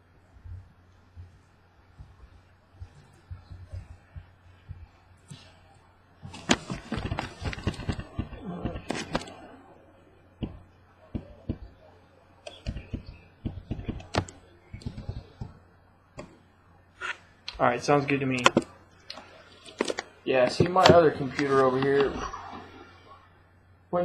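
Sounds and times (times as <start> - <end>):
faint low hum: 0.0 - 24.0
objects handled on a desk: 6.2 - 9.4.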